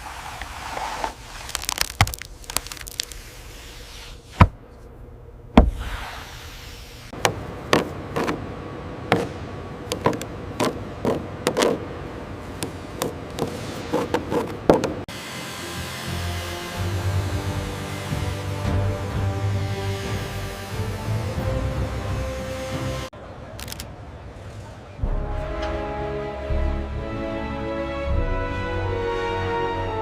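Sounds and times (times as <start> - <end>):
sharp knocks and bangs: 7.2 - 11.9.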